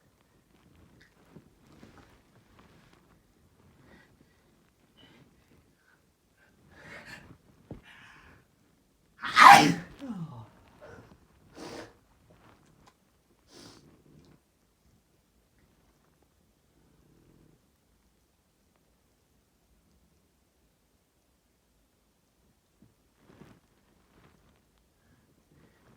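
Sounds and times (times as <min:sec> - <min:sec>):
person sneezing: 0:09.2 - 0:10.4.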